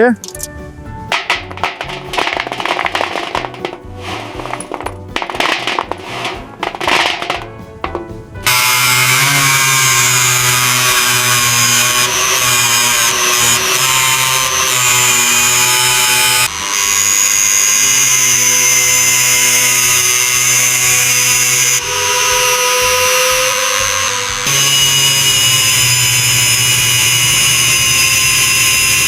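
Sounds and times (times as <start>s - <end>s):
power drill motor whine: 8.5s - 29.0s.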